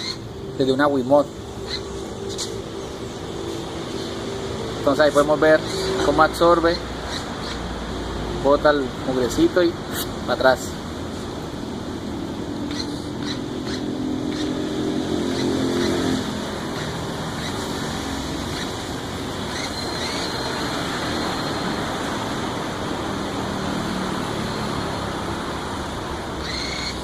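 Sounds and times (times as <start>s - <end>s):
vacuum fan rushing: 9.8s - 27.0s.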